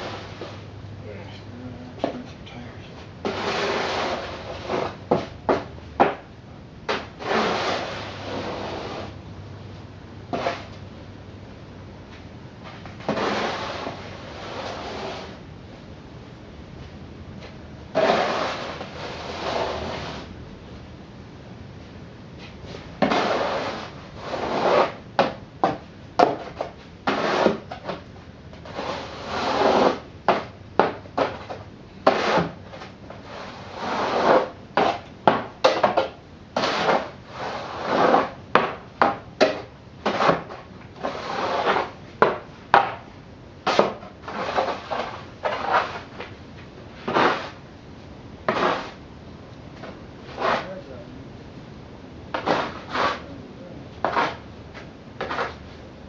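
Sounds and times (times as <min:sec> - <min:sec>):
snow scraping: 0:03.3 - 0:05.0, 0:07.2 - 0:09.1, 0:13.1 - 0:15.4, 0:18.0 - 0:20.3, 0:33.2 - 0:34.5.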